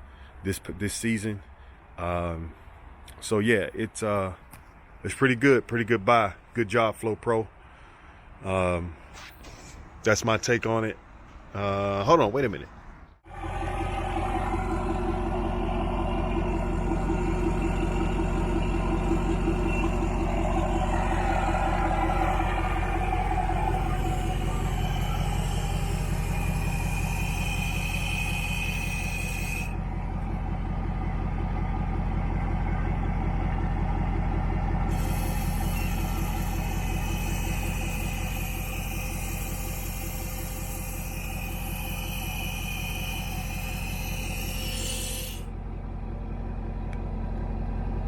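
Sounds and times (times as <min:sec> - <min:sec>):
pressure washer engine running: 0:13.3 - 0:30.2, 0:34.9 - 0:45.4.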